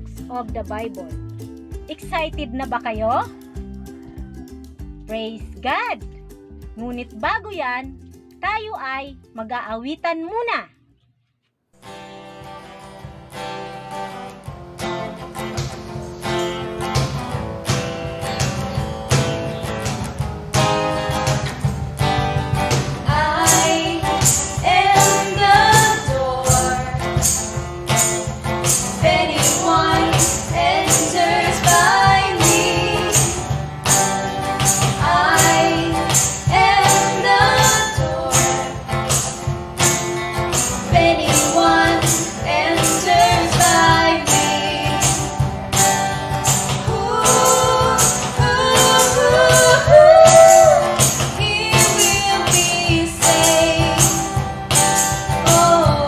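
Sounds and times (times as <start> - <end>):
acoustic guitar: 0.0 - 56.0
tambourine beat: 13.0 - 56.0
woman singing: 23.0 - 27.4, 28.9 - 33.6, 34.7 - 39.0, 40.7 - 45.4, 46.7 - 56.0.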